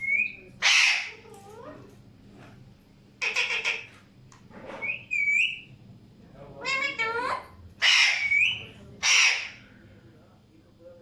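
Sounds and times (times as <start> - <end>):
parakeet squawks: 0.0 - 1.2, 3.2 - 4.0, 4.8 - 5.7, 6.6 - 9.6
parakeet harsh screech: 0.6 - 1.1, 7.8 - 9.6
parakeet whistle: 4.8 - 5.7, 7.8 - 9.4.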